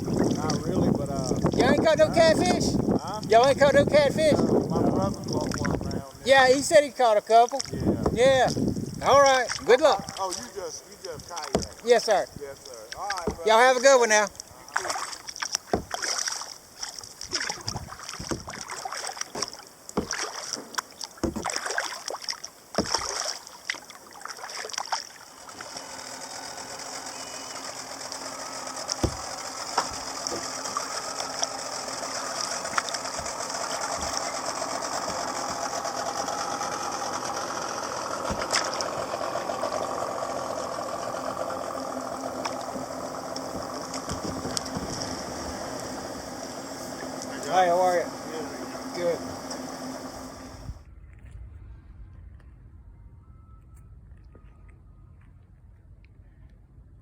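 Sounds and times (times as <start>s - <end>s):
motorboat engine: 0.0s - 50.9s
paddle splashing in water: 7.3s - 12.2s, 12.9s - 26.0s, 27.1s - 41.3s, 42.2s - 47.4s.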